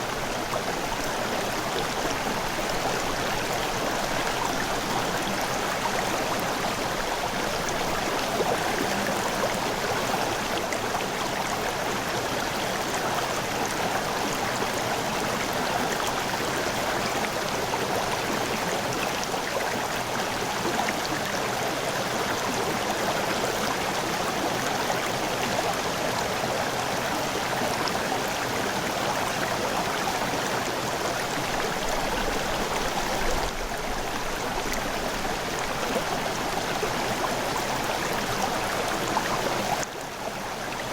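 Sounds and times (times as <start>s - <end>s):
river water flowing: 0.0s - 40.9s.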